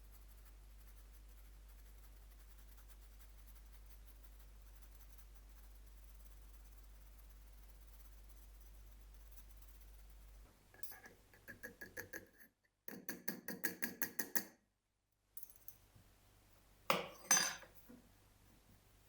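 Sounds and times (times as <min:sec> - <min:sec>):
utensils clinking against crockery: 0:16.9 - 0:17.8.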